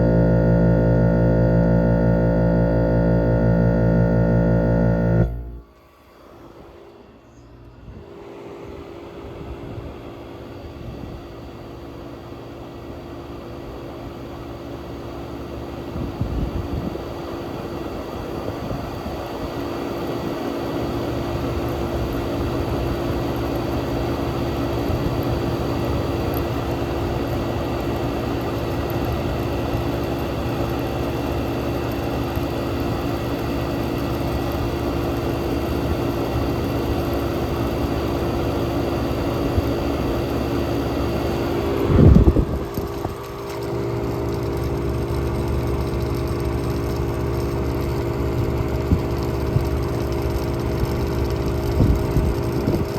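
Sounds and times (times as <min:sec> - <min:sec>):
low rumble: 0:00.0 - 0:05.7
fan air rushing: 0:00.0 - 0:12.1, 0:33.7 - 0:47.1
compressor humming: 0:00.0 - 0:52.9.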